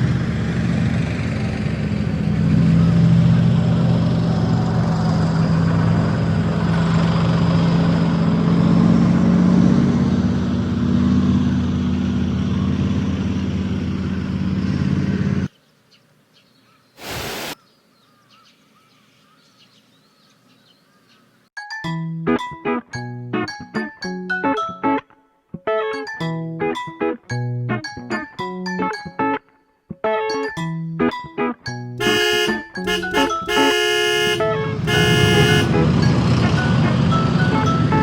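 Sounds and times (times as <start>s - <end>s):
vehicle engine running: 0.0s - 15.5s, 32.0s - 38.0s
short burst of noise: 17.0s - 17.6s.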